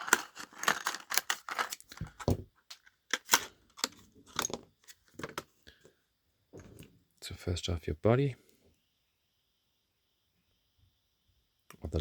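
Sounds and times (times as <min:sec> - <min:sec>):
cardboard packaging crinkling: 0:00.0 - 0:05.3.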